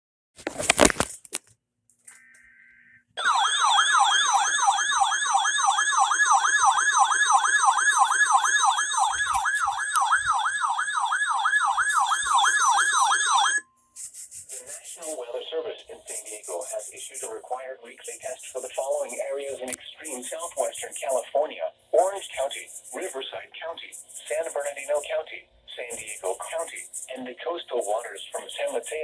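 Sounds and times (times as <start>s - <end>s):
faint data tone: 2.0s - 4.6s, 11.9s - 13.1s, 15.0s - 29.0s
warbling electronic alert tone: 2.1s - 13.6s.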